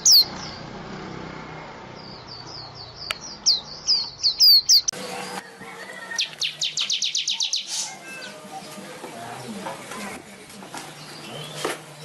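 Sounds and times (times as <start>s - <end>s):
weaver bird chirping: 0.0s - 0.7s, 1.9s - 5.0s, 6.1s - 8.4s.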